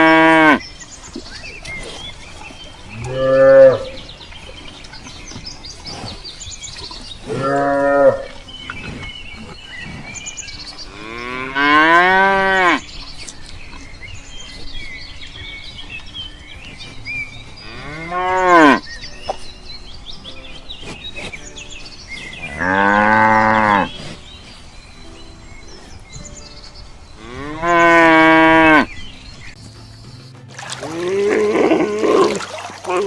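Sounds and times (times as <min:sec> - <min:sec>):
cow mooing: 0:07.3 - 0:08.4, 0:30.8 - 0:32.4.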